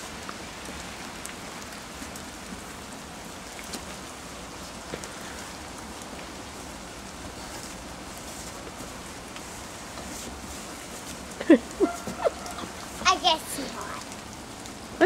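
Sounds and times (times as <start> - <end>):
wet snow falling: 0.0 - 15.0
flakes and drips landing: 3.3 - 13.0.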